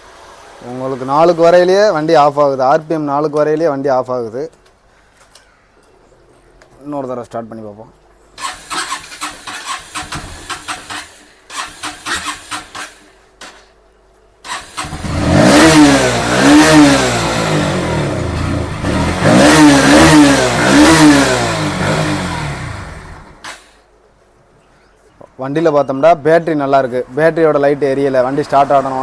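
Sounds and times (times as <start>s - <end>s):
motorcycle engine revving: 8.4s - 13.6s, 14.4s - 23.7s
motorcycle starter cranking: 8.4s - 13.8s, 14.4s - 23.8s.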